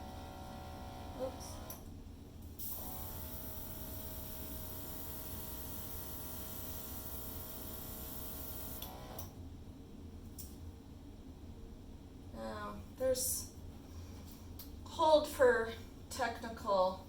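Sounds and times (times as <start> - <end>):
compressor whine: 0.0 - 1.9, 2.6 - 9.5.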